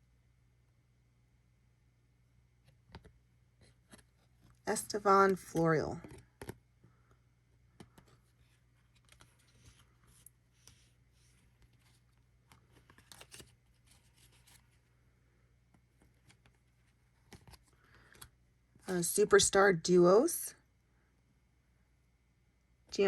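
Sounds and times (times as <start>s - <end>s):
low steady hum: 0.0s - 23.0s
trading cards clicking and rustling: 8.9s - 14.7s.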